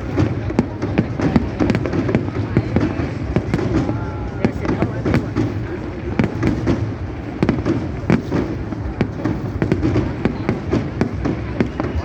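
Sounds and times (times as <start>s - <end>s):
fireworks bangs and cracks: 0.0s - 12.0s.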